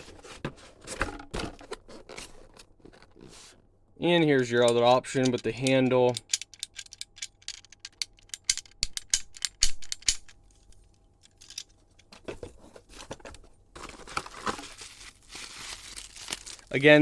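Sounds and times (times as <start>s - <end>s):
lock hardware clicking: 4.6s - 10.4s
packaging rustling: 12.4s - 17.0s.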